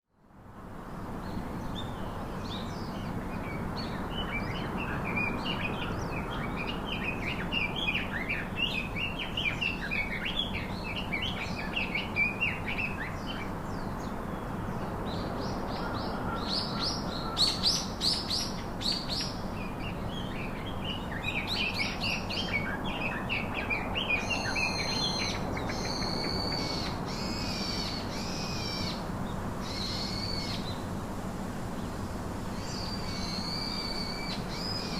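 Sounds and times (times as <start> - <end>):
steady background hiss: 0.2 - 34.9
birds chirping and singing: 15.4 - 29.0.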